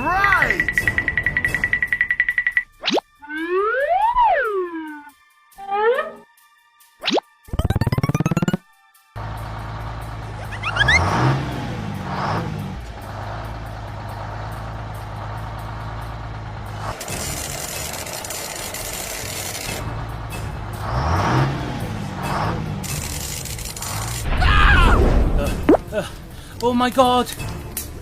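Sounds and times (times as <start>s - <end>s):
heavy vehicle engine running: 9.2s - 24.2s.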